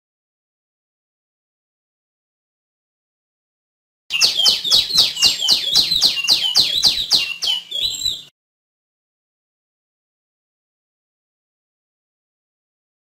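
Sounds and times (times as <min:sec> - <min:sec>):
songbird sharp downslurred calls: 0:04.1 - 0:08.3.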